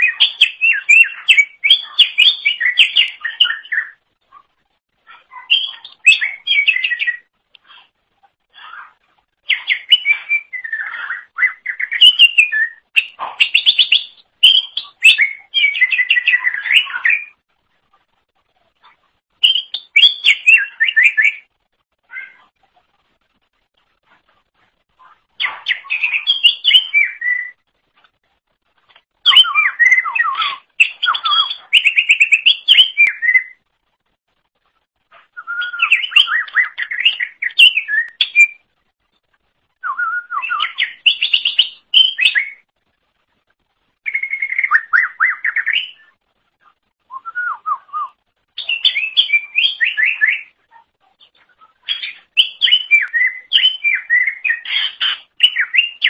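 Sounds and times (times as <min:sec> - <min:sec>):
bird singing whistled notes: 0:00.0 - 0:04.0, 0:05.4 - 0:07.3, 0:09.4 - 0:17.4, 0:19.4 - 0:21.5, 0:25.4 - 0:27.6, 0:29.2 - 0:33.6, 0:35.2 - 0:38.7, 0:39.8 - 0:42.7, 0:44.0 - 0:46.2, 0:47.0 - 0:50.6, 0:51.6 - 0:56.0.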